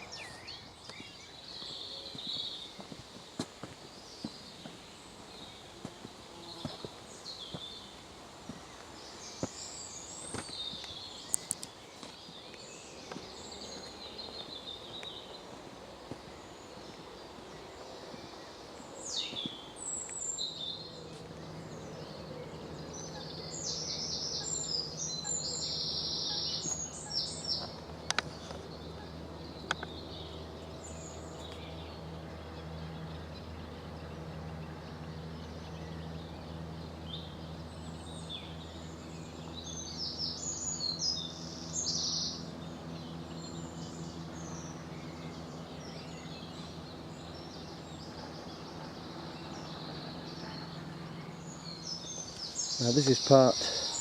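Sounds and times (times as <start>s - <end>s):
low steady hum: 0.0s - 54.0s
songbirds singing: 0.0s - 54.0s.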